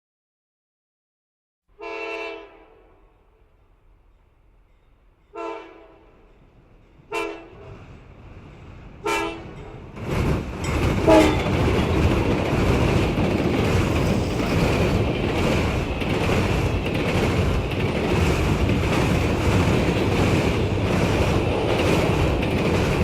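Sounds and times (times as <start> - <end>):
train horn blasts: 1.7 - 3.3, 5.3 - 6.1, 7.1 - 7.7, 9.0 - 9.6, 11.0 - 11.5
train passing rumble: 2.6 - 23.0.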